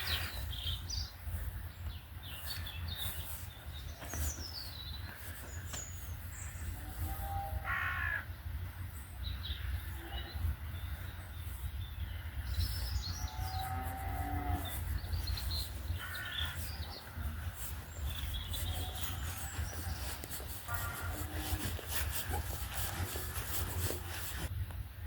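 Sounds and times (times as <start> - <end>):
small birds chirping: 0.0 - 24.5
drawn-out call: 6.8 - 8.2, 15.7 - 24.1
crow cawing: 7.6 - 8.3, 16.0 - 16.7.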